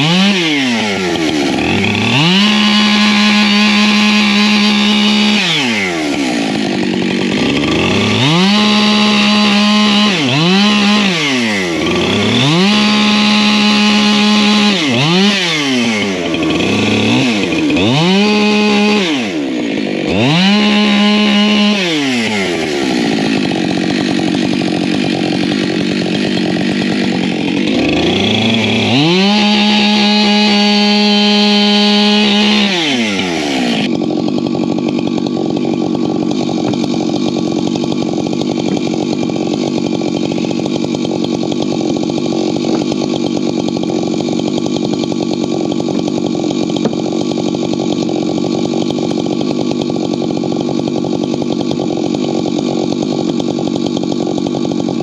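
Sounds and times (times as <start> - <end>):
chainsaw idling and revving: 0.0 - 55.0.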